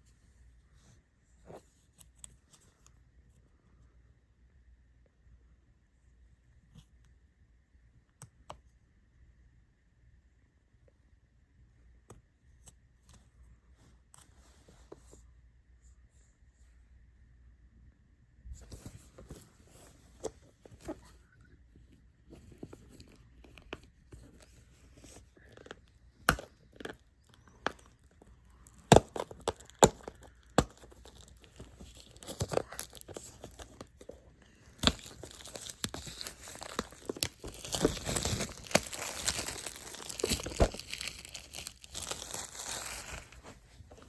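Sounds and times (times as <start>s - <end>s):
wrapping tearing and crinkling: 24.3s - 44.0s
packaging clicks and snaps: 25.0s - 43.4s.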